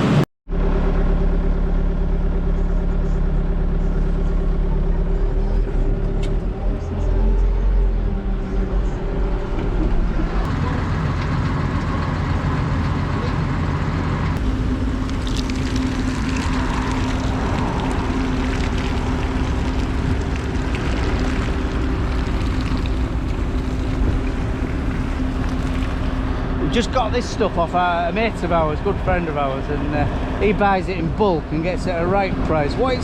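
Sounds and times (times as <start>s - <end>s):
steady hum: 0.0s - 33.0s
feed-milling machinery running: 8.8s - 33.0s.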